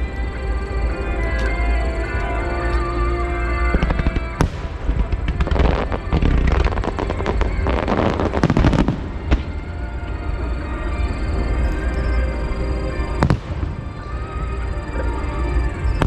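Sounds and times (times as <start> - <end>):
firework crackling: 0.0 - 16.0
music playing: 0.0 - 16.0
firework bangs: 3.6 - 9.9, 13.0 - 16.0.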